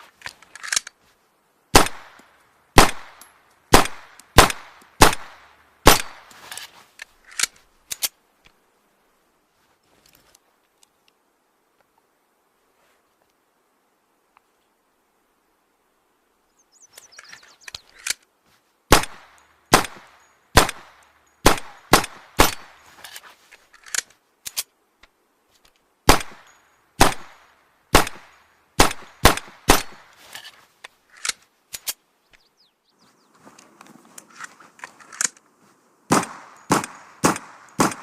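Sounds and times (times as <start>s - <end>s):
sharp shot-like cracks: 1.7s - 2.2s, 2.8s - 6.3s, 18.9s - 22.8s, 26.1s - 30.1s, 36.1s - 38.0s.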